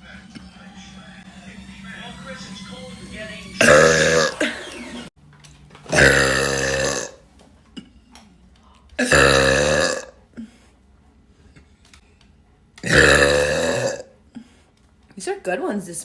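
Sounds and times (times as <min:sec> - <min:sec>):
woman burping: 0:03.6 - 0:04.6, 0:05.9 - 0:07.2, 0:09.0 - 0:10.2, 0:12.8 - 0:14.1.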